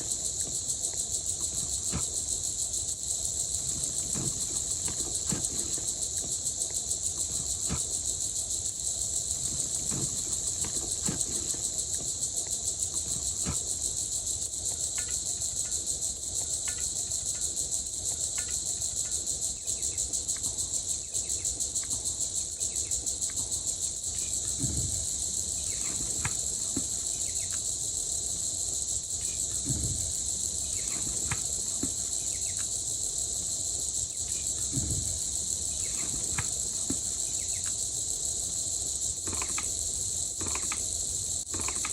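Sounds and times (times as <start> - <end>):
insects trilling: 0.0 - 41.9
dull low thumps: 29.4 - 32.1, 34.6 - 37.2.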